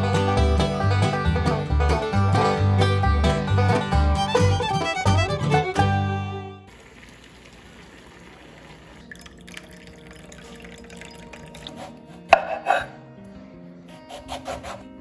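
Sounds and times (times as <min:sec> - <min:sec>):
water dripping and trickling: 0:06.7 - 0:11.8.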